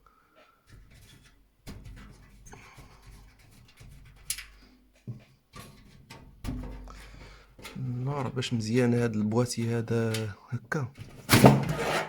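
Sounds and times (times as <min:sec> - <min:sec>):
computer case scraping and rubbing: 0:11.1 - 0:12.0.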